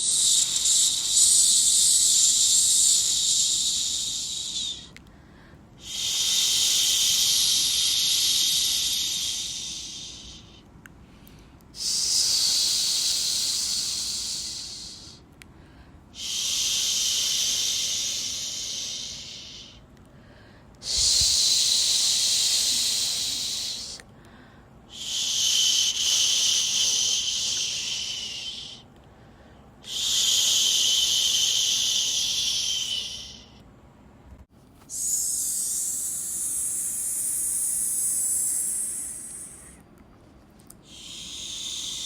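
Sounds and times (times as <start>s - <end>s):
person shushing: 34.9s - 39.8s.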